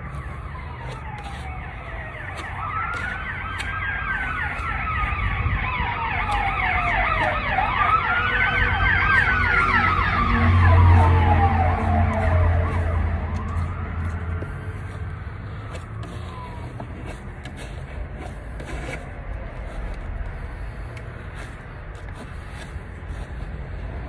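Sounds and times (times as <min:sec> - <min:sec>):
siren yelping sweep: 0:00.0 - 0:13.9
siren wailing: 0:00.0 - 0:16.8.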